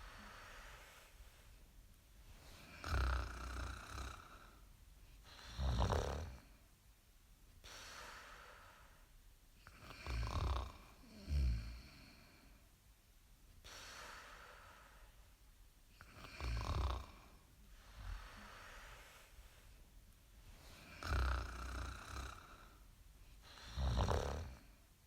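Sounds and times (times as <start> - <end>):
quiet breaths: 0.0 - 25.0
loud snores: 2.6 - 4.6, 5.3 - 6.5, 9.8 - 12.2, 16.0 - 17.3, 20.8 - 22.8, 23.4 - 24.7.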